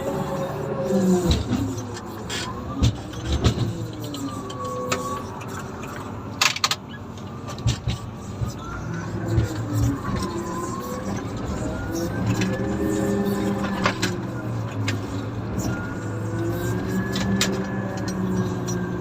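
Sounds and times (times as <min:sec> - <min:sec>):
diesel engine running under load: 0:00.0 - 0:19.0
machine knocks and clatters: 0:02.7 - 0:03.8, 0:07.5 - 0:08.7.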